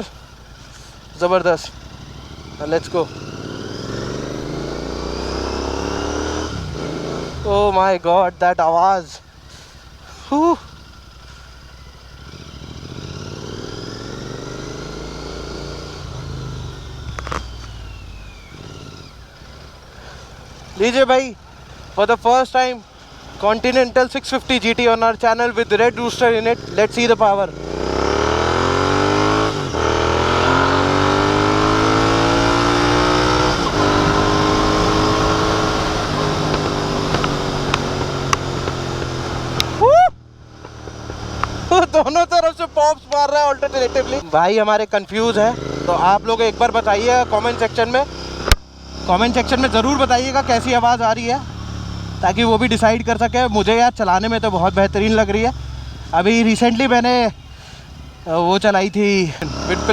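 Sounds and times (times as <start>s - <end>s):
exhaust popping: 0.0s - 59.9s
motorcycle engine accelerating: 0.0s - 59.9s
short sharp click: 48.5s - 48.7s.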